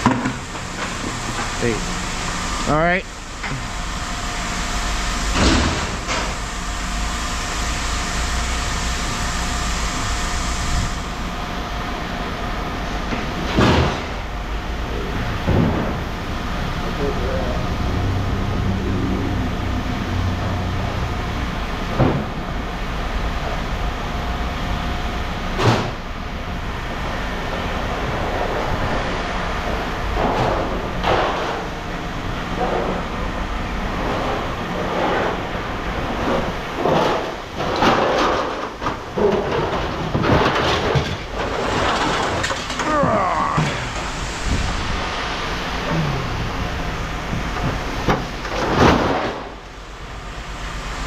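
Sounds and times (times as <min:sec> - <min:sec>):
machinery running: 0:00.0 - 0:51.0
scrap metal clattering: 0:36.2 - 0:42.9.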